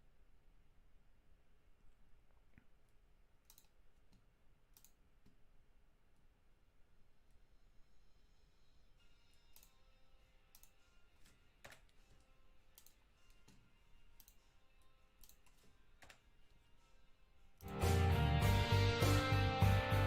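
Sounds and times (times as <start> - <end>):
faint clicks: 3.4 - 5.4, 12.8 - 16.2
loud music: 17.6 - 20.0.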